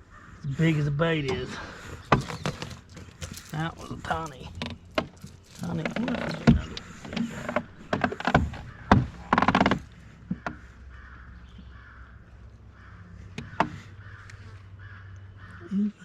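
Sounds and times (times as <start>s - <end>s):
bird harsh calls: 0.0s - 16.0s
sharp knocks: 4.6s - 10.7s.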